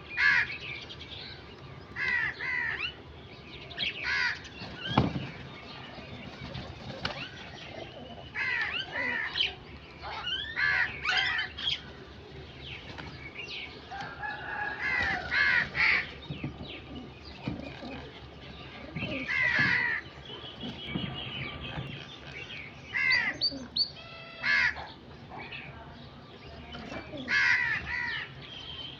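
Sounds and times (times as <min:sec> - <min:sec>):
crows cawing: 0:00.2 - 0:00.6, 0:02.0 - 0:02.9, 0:04.0 - 0:04.5, 0:10.1 - 0:11.8, 0:14.0 - 0:16.2, 0:19.1 - 0:20.1, 0:24.4 - 0:25.0, 0:27.2 - 0:28.3.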